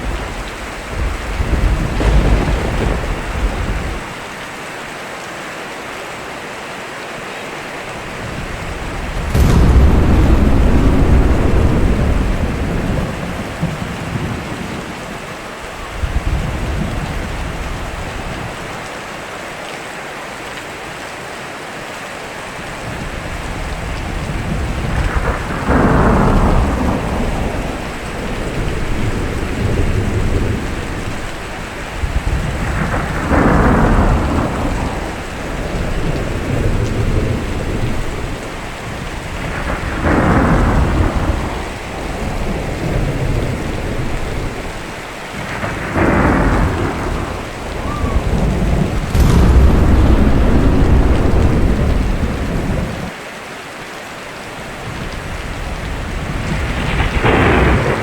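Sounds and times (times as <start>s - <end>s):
thunder rumbling: 0.0s - 4.5s, 8.2s - 17.2s, 23.0s - 53.2s, 55.3s - 58.0s
loud thunderclaps: 0.0s - 4.6s, 8.2s - 18.4s, 22.8s - 53.2s, 55.0s - 58.0s
steady rain: 0.0s - 58.0s.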